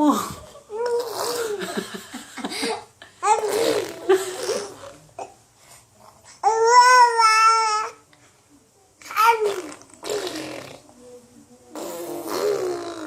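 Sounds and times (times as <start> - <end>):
baby babbling: 0.7 - 1.6, 3.2 - 4.0, 6.4 - 8.0, 9.0 - 10.0.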